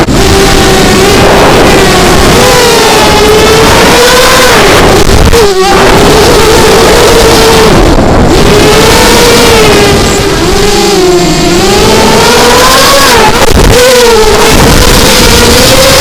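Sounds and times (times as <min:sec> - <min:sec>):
quadcopter motors whining: 0:00.0 - 0:16.0
wind rush on microphone: 0:00.0 - 0:16.0.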